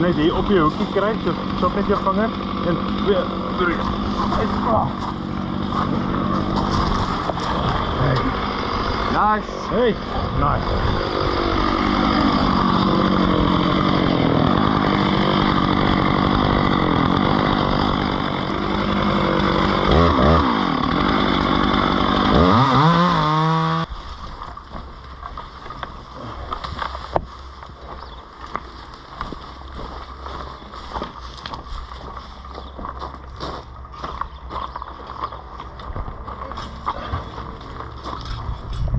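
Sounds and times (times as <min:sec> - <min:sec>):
chainsaw revving: 0:00.0 - 0:23.9.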